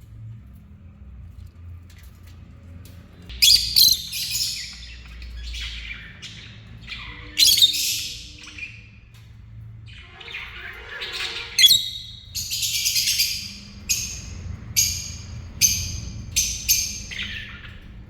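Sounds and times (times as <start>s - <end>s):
lovebirds chattering and squawking: 3.3s - 9.0s, 9.8s - 18.0s.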